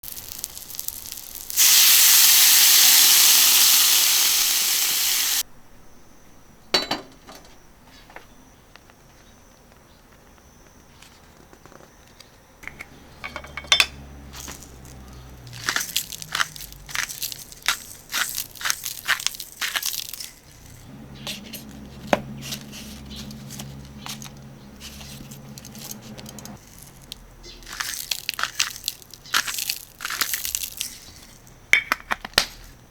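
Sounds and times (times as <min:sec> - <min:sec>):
meat sizzling on a griddle: 0:00.0 - 0:05.4
metal utensils and dishes clinking: 0:12.6 - 0:32.7.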